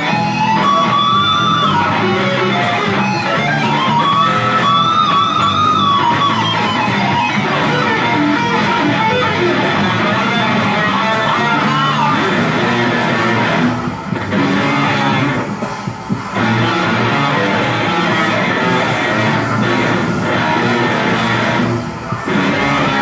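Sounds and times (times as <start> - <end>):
bass guitar: 0.0 - 23.0
electric lead guitar bending notes: 0.0 - 23.0
strummed rhythm guitar: 0.0 - 23.0.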